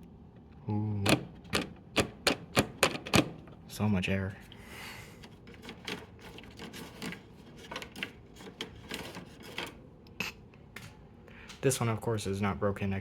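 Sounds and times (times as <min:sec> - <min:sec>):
air conditioner blower rushing: 0:00.0 - 0:13.0
plastic louvers clicking and scraping: 0:05.2 - 0:09.8.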